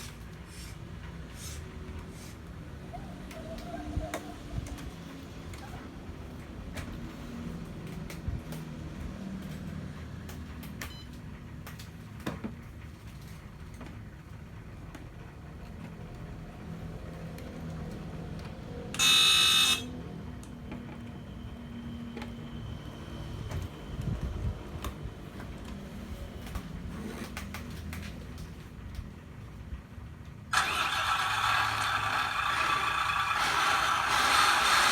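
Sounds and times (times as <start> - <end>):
electronic buzzer tone: 19.0 - 19.9
model truck low rumble: 30.0 - 34.9.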